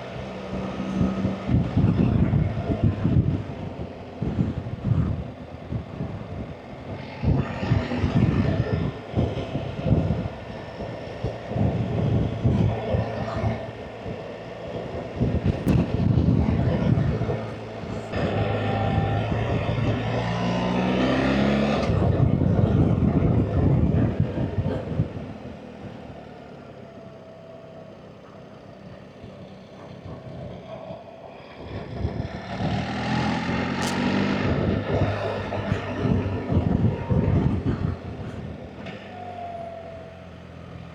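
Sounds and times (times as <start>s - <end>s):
wind rush: 0.5s - 25.4s, 31.6s - 38.8s
motorcycle engine running: 31.5s - 39.0s.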